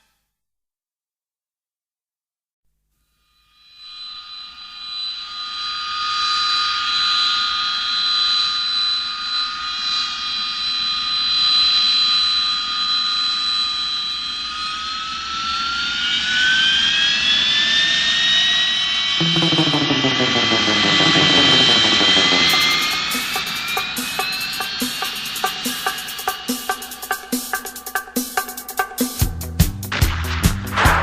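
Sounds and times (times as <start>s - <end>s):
jet engine whine: 4.4s - 29.1s
falling lower tones: 19.2s - 27.2s.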